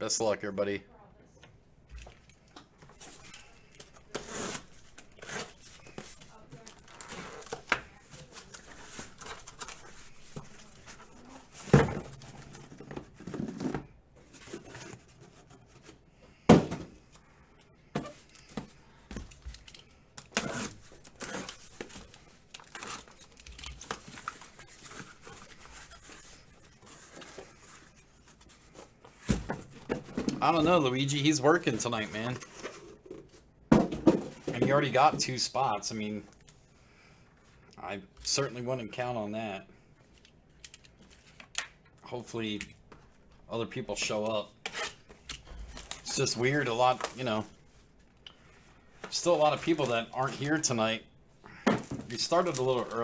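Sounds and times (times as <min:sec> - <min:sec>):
cardboard being handled: 0:02.9 - 0:17.1, 0:20.3 - 0:35.4, 0:44.0 - 0:48.0, 0:49.0 - 0:53.0
wrapping tearing and crinkling: 0:03.0 - 0:11.7, 0:19.3 - 0:29.0, 0:44.8 - 0:51.0, 0:51.8 - 0:53.0.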